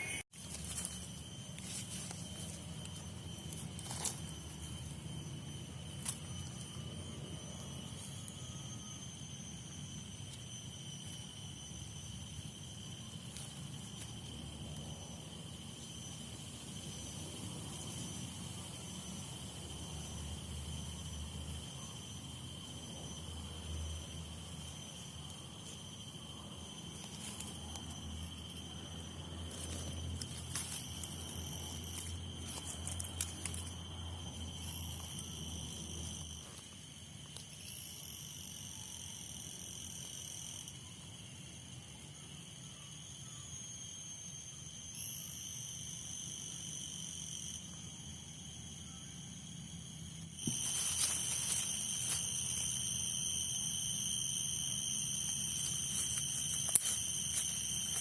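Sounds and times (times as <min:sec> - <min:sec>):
louder higher insect shrill: 0:00.0 - 0:36.7, 0:50.2 - 0:58.0
insects shrilling steadily: 0:00.0 - 0:58.0.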